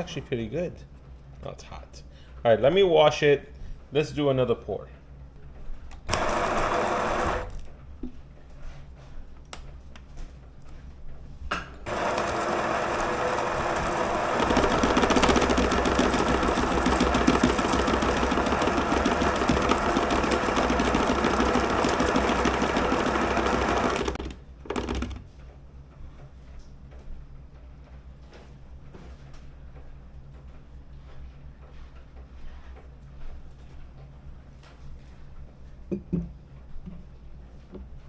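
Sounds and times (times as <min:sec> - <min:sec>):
espresso machine pump buzzing: 0:06.1 - 0:07.7, 0:11.9 - 0:25.0.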